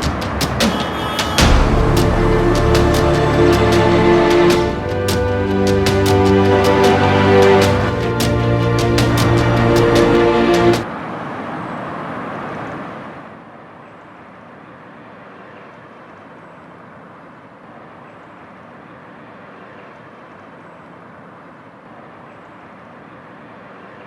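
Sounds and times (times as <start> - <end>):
music: 0.0 - 10.9
steady rushing noise: 0.0 - 11.2.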